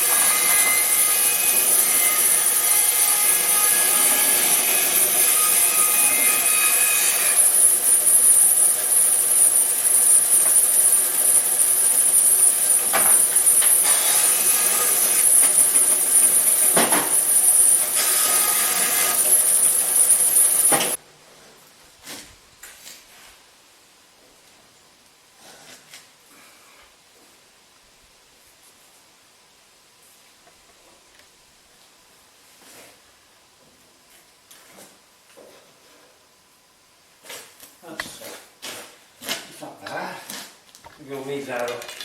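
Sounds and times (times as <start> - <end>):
band saw cutting timber: 0.0 - 21.0.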